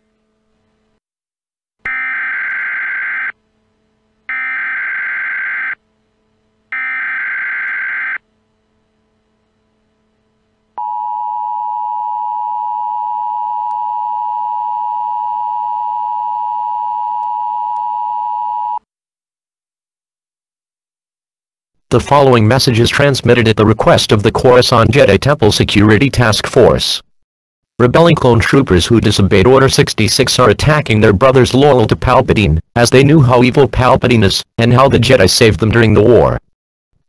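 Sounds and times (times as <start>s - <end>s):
two-tone alarm: 1.9s - 3.4s, 4.3s - 5.8s, 6.7s - 8.2s.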